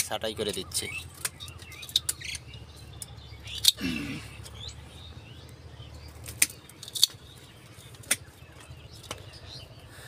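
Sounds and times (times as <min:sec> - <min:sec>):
plant stems snapping: 0:06.2 - 0:07.2.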